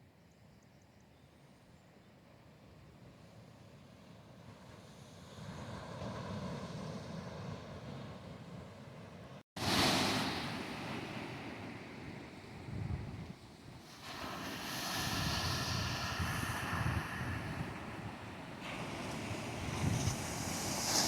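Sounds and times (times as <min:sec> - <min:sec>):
surf washing on beach: 0:09.6 - 0:21.0
wind on microphone: 0:12.6 - 0:13.4, 0:14.0 - 0:21.0.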